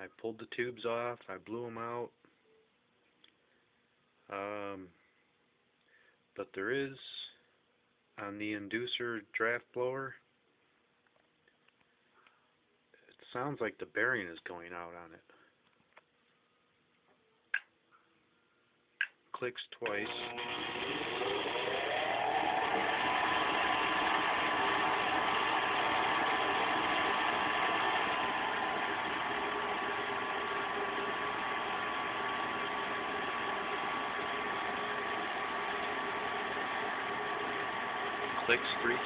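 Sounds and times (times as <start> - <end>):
blower motor whining hum: 19.9 - 39.0.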